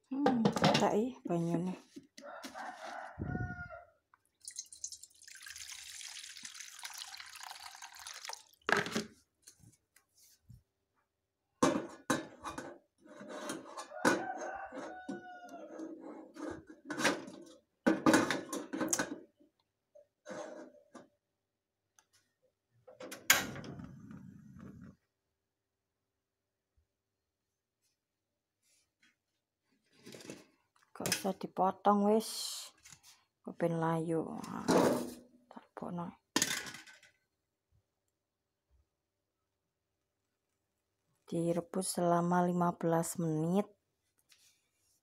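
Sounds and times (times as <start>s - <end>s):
water poured into a pot: 4.4s - 9.0s.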